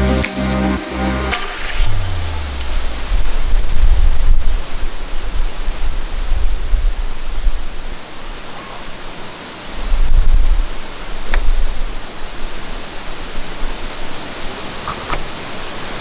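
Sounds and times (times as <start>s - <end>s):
wind buffeting on microphone: 1.8s - 8.5s, 9.7s - 15.3s.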